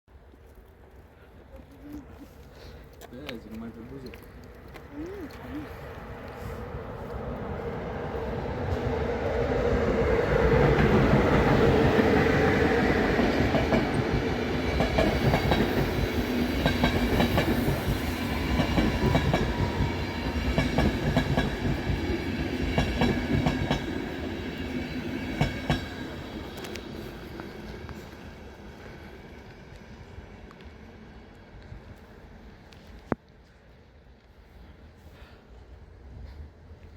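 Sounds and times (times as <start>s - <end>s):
passing electric locomotive: 2.0s - 36.9s
train wheels clicking over rail joints: 13.1s - 28.0s.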